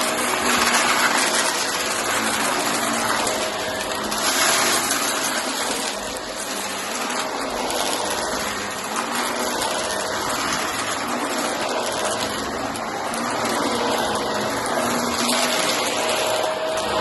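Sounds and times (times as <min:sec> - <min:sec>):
vacuum cleaner running: 0:00.0 - 0:17.0.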